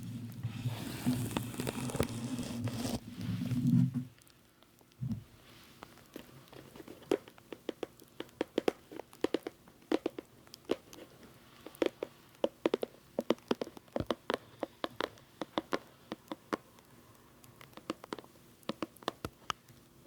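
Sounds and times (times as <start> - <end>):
sharp clicks and taps: 5.9 - 19.9.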